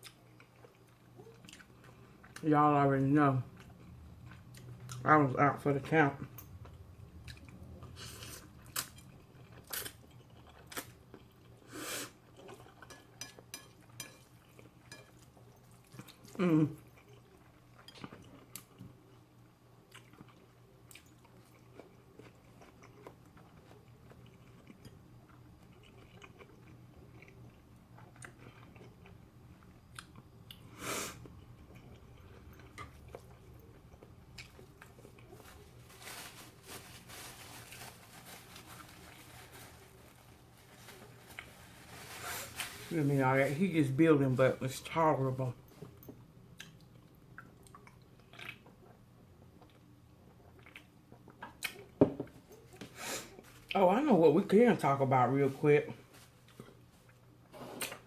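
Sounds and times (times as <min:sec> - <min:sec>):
chewing and mouth noises: 0:00.0 - 0:02.4, 0:06.4 - 0:13.1, 0:14.3 - 0:30.6, 0:31.2 - 0:35.6, 0:45.8 - 0:53.8.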